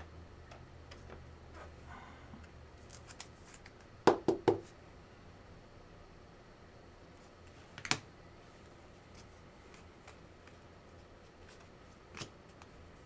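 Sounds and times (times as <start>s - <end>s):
trading cards handling: 2.8s - 3.8s.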